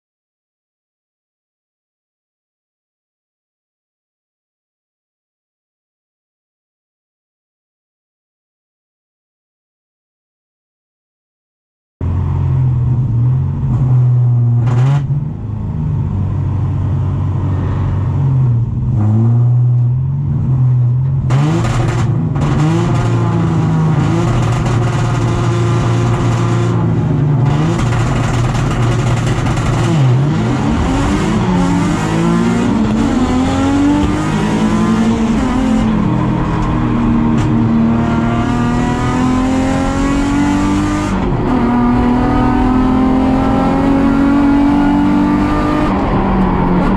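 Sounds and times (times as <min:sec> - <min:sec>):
race car engine revving: 0:17.2 - 0:46.9.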